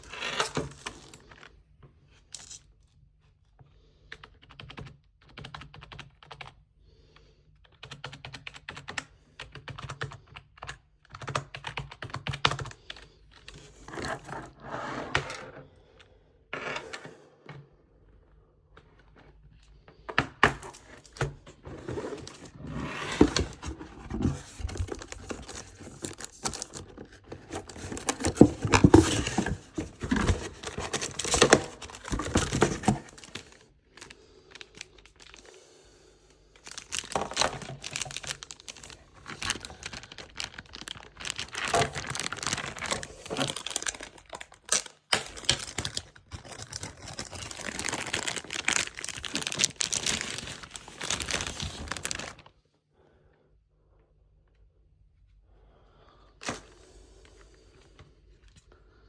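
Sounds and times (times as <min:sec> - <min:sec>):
packaging crinkling: 0:21.8 - 0:35.6, 0:36.6 - 0:52.5.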